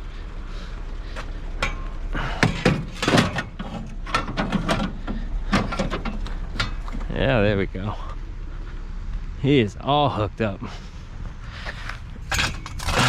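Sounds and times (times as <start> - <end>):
steady low hum: 0.0 - 13.0
scrap knocks and metallic clinks: 12.2 - 13.0.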